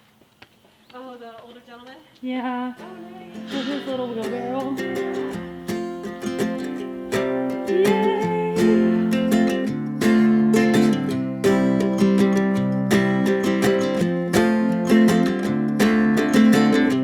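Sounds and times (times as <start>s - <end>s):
strummed acoustic guitar music: 2.8s - 17.0s.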